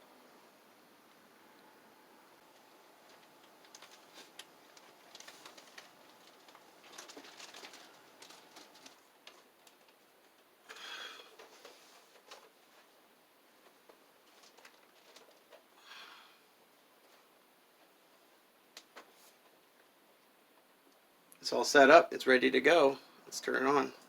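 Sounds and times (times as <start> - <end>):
rustling: 2.4 - 21.0.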